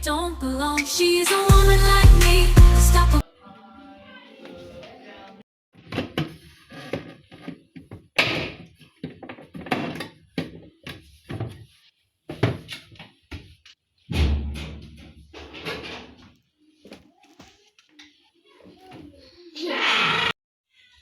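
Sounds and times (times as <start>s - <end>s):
heavy thump: 14.1s - 15.6s.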